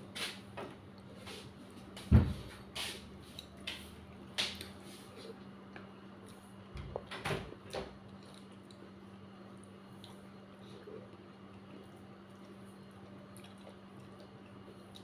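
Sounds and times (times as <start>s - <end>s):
wet chewing and lip-smacking: 8.0s - 15.0s.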